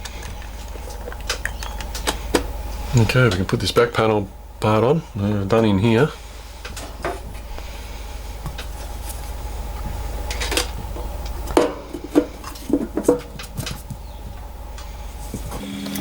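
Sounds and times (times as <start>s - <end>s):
steady low hum: 0.0s - 16.0s
metal panel knocks and rattles: 9.8s - 14.5s.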